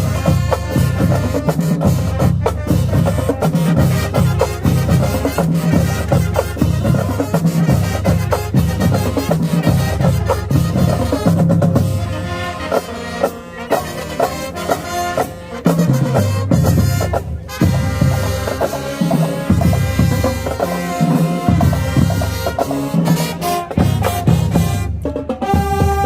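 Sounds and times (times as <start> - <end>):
marching band playing: 0.0 - 26.0
sustained horn notes: 0.0 - 26.0
bass drums and snares pounding: 13.7 - 26.0.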